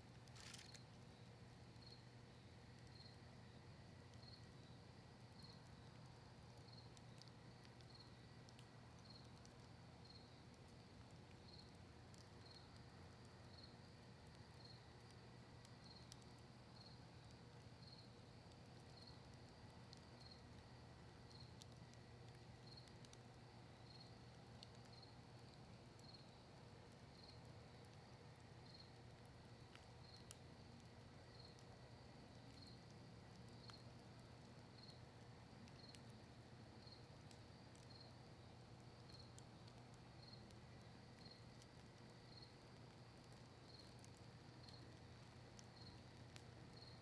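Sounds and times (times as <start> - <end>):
campfire crackling: 0.0 - 47.0
cricket chirping: 0.3 - 0.8.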